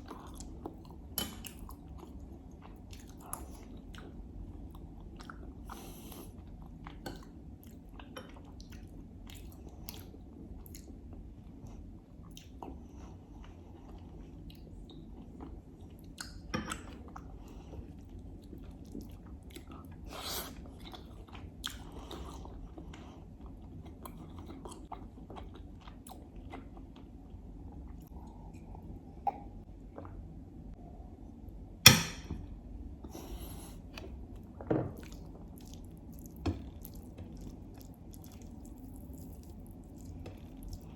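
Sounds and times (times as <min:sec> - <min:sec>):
close chewing mouth sounds: 0:35.0 - 0:40.9.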